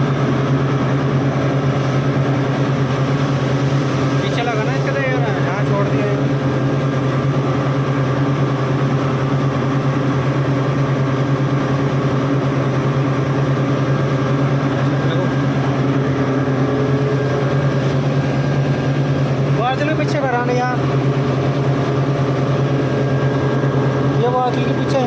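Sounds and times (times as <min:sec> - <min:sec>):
loud machinery hum: 0:00.0 - 0:25.0.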